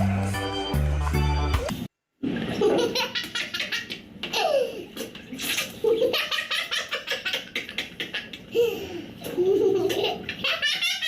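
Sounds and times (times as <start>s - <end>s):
baby laughing: 2.6s - 11.0s.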